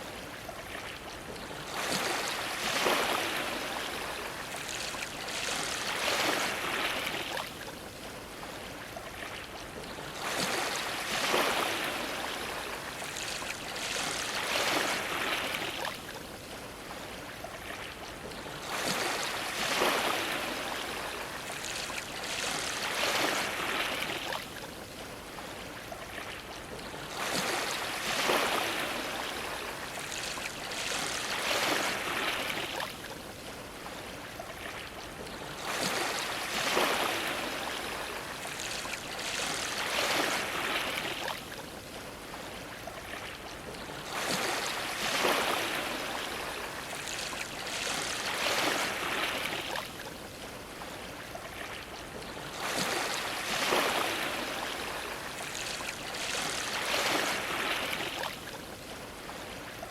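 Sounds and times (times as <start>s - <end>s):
waves splashing against a dock: 0.0s - 59.9s.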